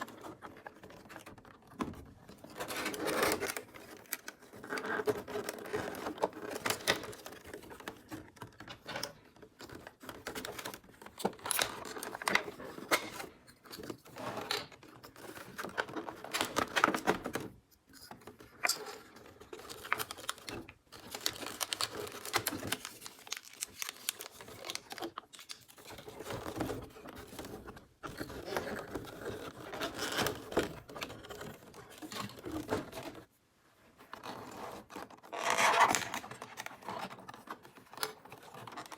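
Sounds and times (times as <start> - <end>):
packaging crinkling and tearing: 18.6 - 33.2
small plastic pieces clicking: 19.6 - 25.9.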